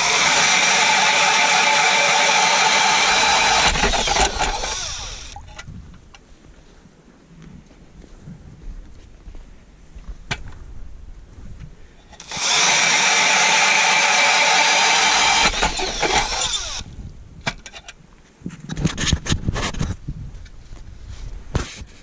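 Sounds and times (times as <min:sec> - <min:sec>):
drill whining: 0:00.0 - 0:05.5, 0:12.2 - 0:16.9
knocks and scrapes: 0:01.8 - 0:06.2, 0:17.5 - 0:22.0.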